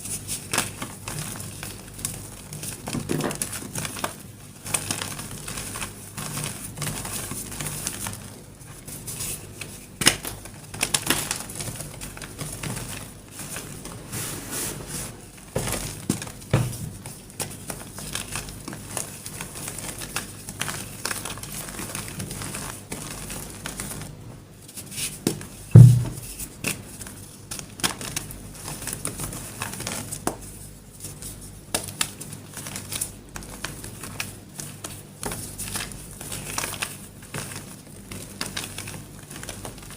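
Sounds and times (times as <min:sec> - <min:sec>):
heavy thump: 0:25.8 - 0:26.3.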